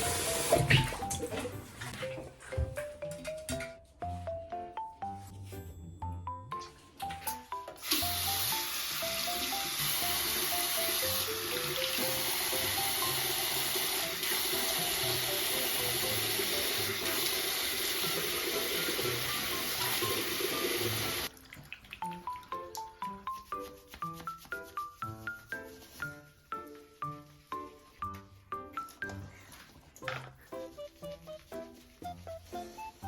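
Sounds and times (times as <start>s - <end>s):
water running: 0.0s - 2.0s, 7.0s - 24.0s
background music: 0.0s - 33.0s.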